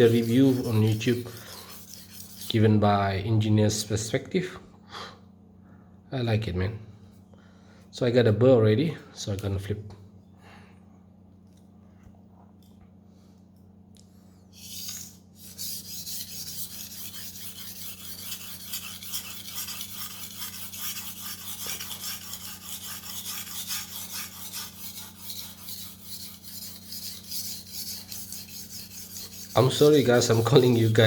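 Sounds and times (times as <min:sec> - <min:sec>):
knife scraping on whetstone: 0:00.0 - 0:02.6, 0:14.6 - 0:31.0.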